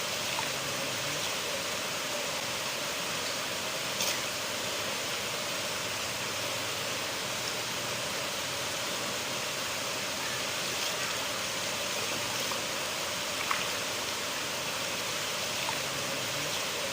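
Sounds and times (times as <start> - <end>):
river water rushing: 0.0 - 16.9
faint splashes: 10.2 - 16.9.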